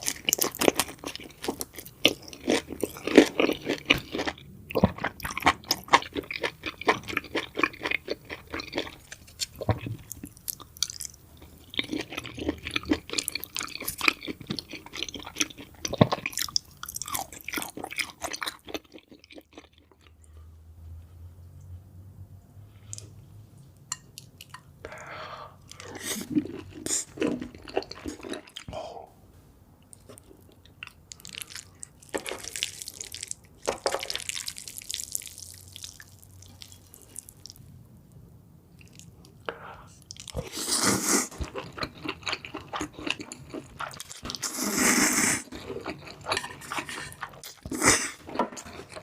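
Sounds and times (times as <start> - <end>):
crunchy chewing and biting: 11.7 - 19.9.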